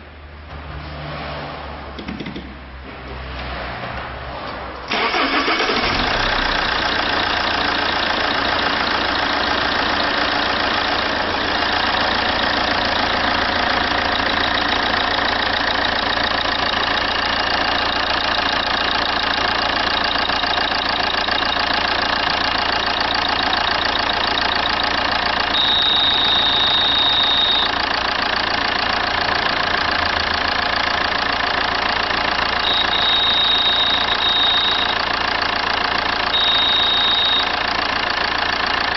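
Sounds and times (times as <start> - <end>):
diesel engine idling with clatter: 1.8 - 38.9
steady high beep: 25.5 - 27.8, 32.6 - 35.0, 36.3 - 37.6.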